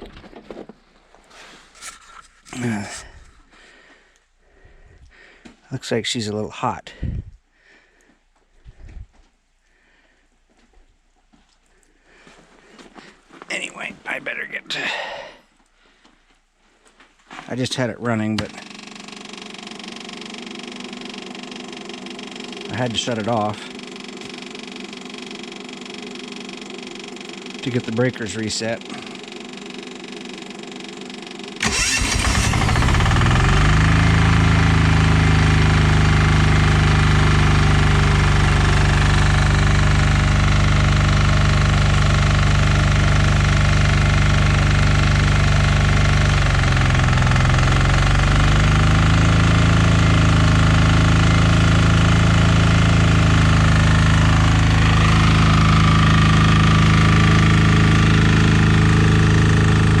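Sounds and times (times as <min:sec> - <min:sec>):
diesel generator engine running: 0:00.0 - 0:05.5, 0:17.6 - 1:00.0.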